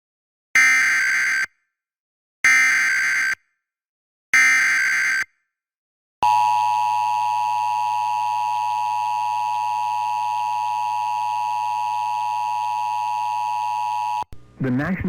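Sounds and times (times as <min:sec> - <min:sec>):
two-tone emergency alert signal: 0:04.4 - 0:05.3, 0:06.2 - 0:14.3.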